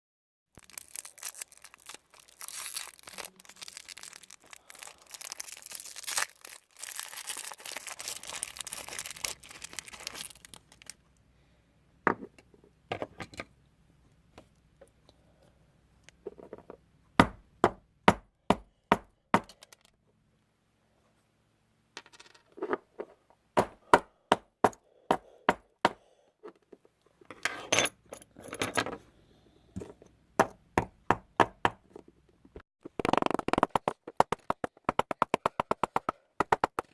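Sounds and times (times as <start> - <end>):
plastic wrapper crinkling: 0.6 - 11.0.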